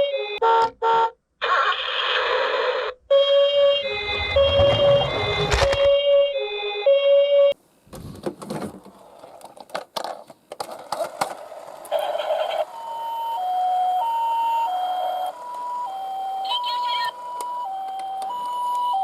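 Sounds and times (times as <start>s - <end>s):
two-tone ambulance siren: 0.0s - 1.1s, 3.1s - 7.6s, 12.0s - 19.0s
higher-pitched two-tone siren: 3.1s - 7.4s, 12.0s - 19.0s
toy cars clattering: 8.8s - 12.7s.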